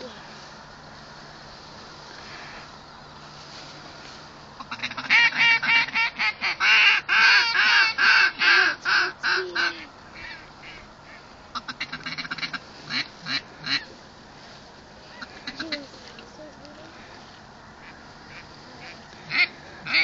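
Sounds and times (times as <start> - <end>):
duck call quacks: 4.6 - 13.9, 15.1 - 15.9, 17.8 - 20.0.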